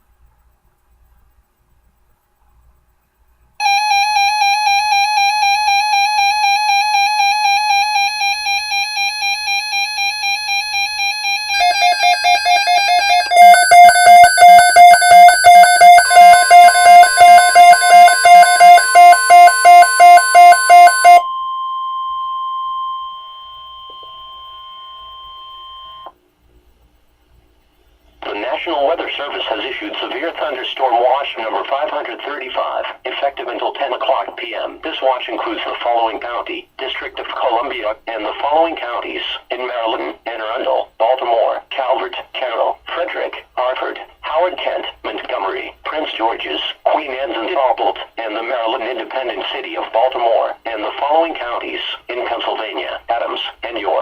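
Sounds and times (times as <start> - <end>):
steady single-pitched alarm tone: 3.6 - 26.1
fast electronic beeping: 11.6 - 21.2.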